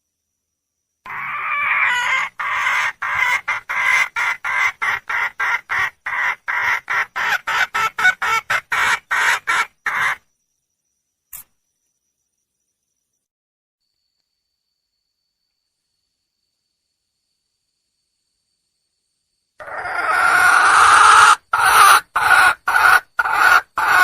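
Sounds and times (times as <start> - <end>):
hen calling and clucking: 1.1 - 10.2, 19.6 - 24.0.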